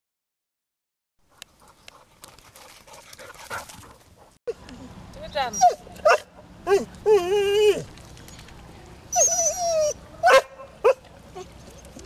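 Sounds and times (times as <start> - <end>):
dog yelping: 5.5 - 7.8, 9.1 - 11.0
dog whining: 9.1 - 10.4.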